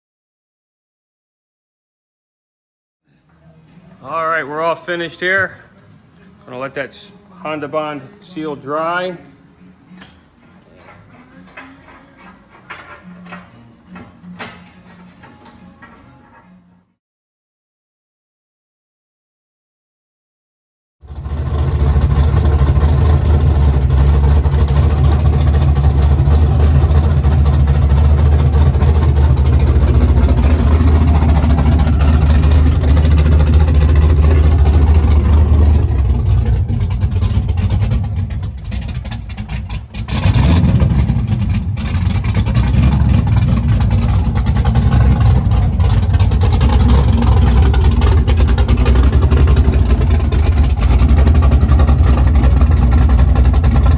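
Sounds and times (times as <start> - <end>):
car engine running loud: 21.0 - 53.9.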